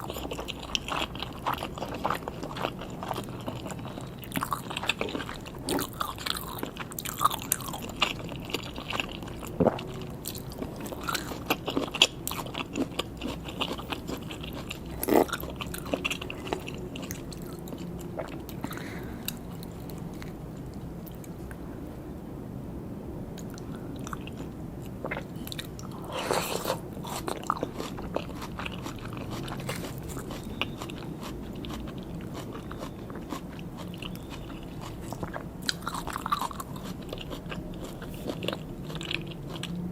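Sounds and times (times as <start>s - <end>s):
chewing and biting food: 0.0s - 21.3s, 23.4s - 39.9s.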